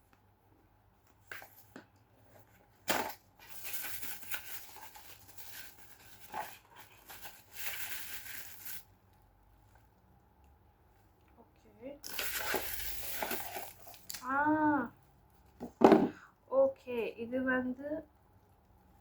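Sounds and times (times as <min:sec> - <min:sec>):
wrapping torn and crinkled: 0:02.9 - 0:08.9, 0:12.0 - 0:14.3.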